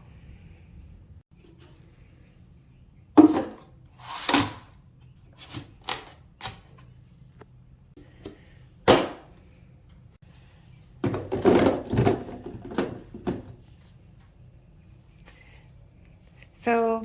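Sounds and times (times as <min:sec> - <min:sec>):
objects knocking and clicking: 0:11.0 - 0:13.6.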